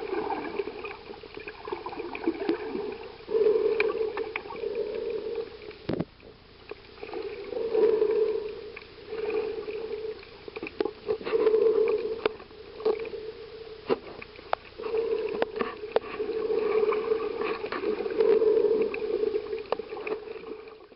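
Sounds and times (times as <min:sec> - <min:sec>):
water gurgling and sloshing: 0:00.0 - 0:20.9.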